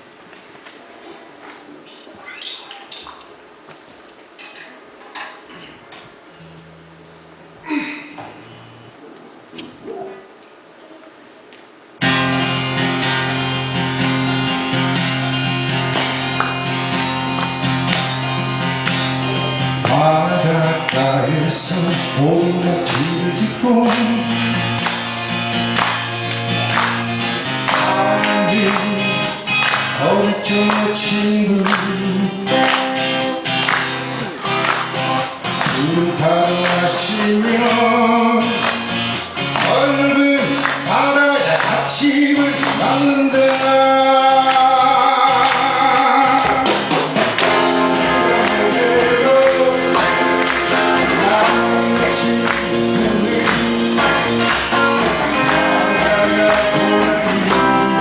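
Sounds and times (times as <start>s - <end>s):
band playing live: 12.0s - 58.0s
person singing: 19.0s - 24.9s, 27.4s - 33.4s, 34.3s - 58.0s.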